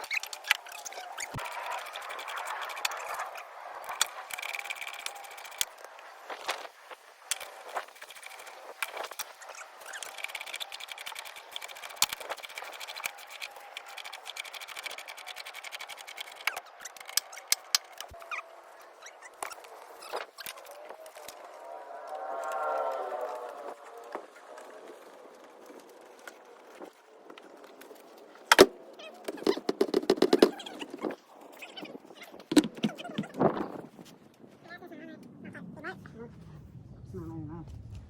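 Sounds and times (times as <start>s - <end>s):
hand tools clicking and clinking: 0.0s - 6.7s, 7.3s - 18.4s.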